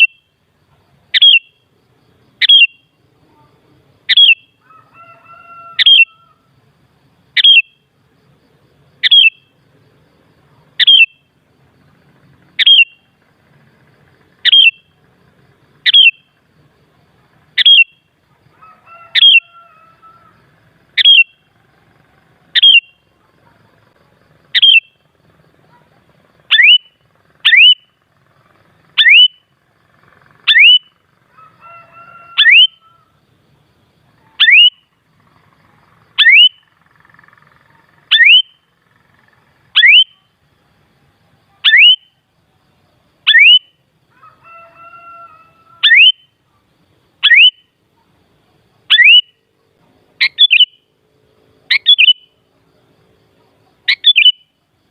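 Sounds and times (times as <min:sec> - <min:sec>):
bird sharp rising call: 0:04.1 - 0:06.5, 0:17.6 - 0:21.5, 0:26.5 - 0:33.2, 0:35.7 - 0:40.2, 0:43.3 - 0:46.3.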